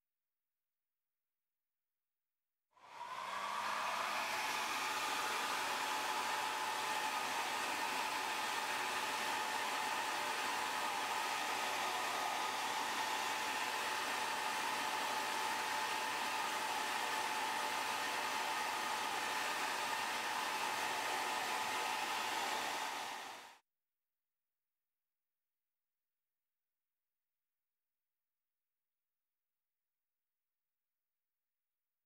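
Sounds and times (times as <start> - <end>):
hair dryer whirring: 2.8 - 23.6.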